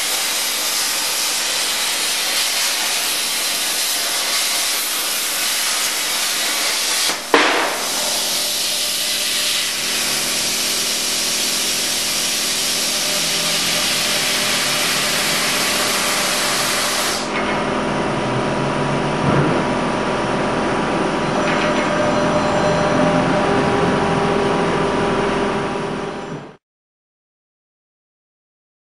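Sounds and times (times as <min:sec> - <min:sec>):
plasma torch hissing: 0:00.0 - 0:17.3
sharp pop: 0:07.1 - 0:08.1.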